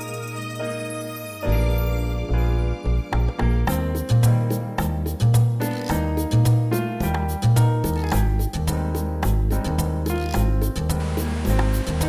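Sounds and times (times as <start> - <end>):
keyboard chords: 0.0 - 12.0
regular percussion: 1.6 - 12.0
bass line: 7.1 - 12.0.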